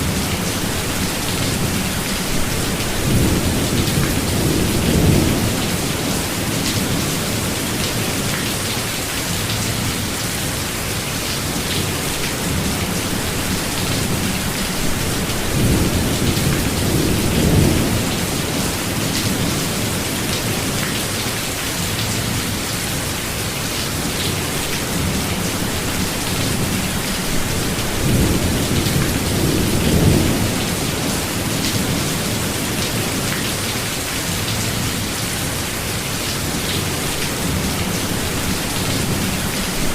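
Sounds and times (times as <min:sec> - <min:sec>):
low rolling thunder: 0:00.0 - 0:07.9, 0:12.4 - 0:20.8, 0:24.9 - 0:33.4
steady rain: 0:00.0 - 0:39.9.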